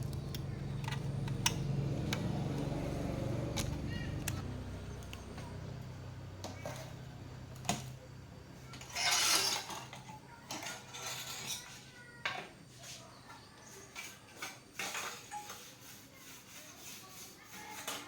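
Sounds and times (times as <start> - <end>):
scrape or rustle: 12.7 - 18.0.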